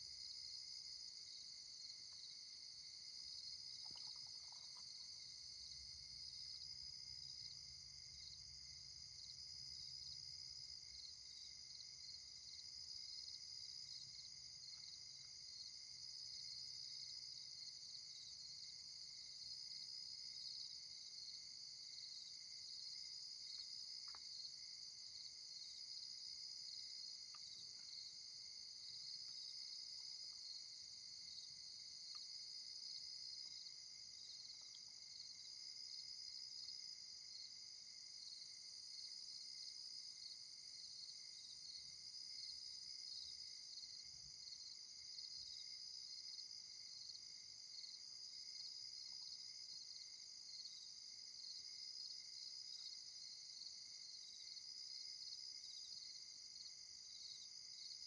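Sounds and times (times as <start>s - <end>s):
crickets and insects trilling: 1.2s - 6.8s.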